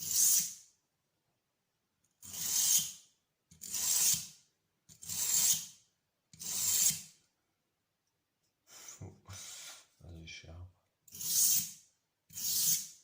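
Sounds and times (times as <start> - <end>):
knife scraping on whetstone: 0.0 - 0.6, 2.2 - 5.8, 6.4 - 7.1, 11.1 - 13.0.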